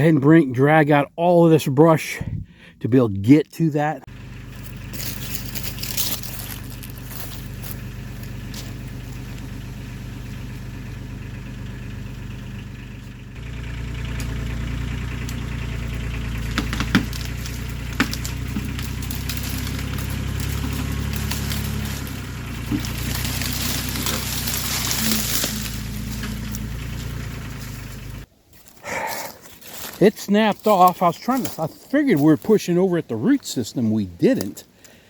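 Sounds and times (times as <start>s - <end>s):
tractor engine running: 0.0s - 35.0s
sharp cracks: 15.2s - 28.2s.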